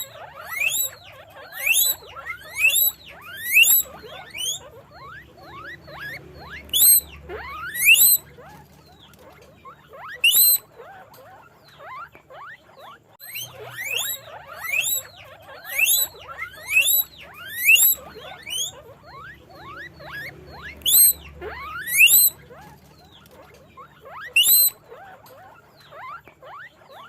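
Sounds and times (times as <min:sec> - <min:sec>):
guinea pigs squeaking: 0:00.0 - 0:27.0.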